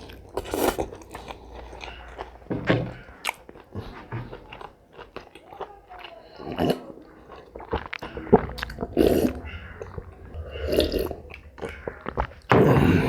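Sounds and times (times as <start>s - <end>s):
person chewing food: 0.0s - 13.0s.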